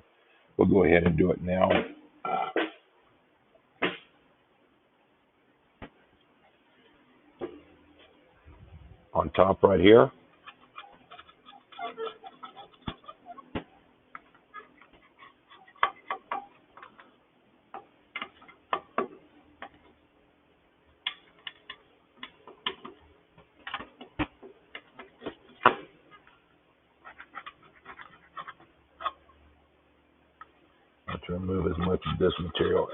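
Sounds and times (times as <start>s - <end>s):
hand scraper scraping gasket: 10.3s - 13.5s.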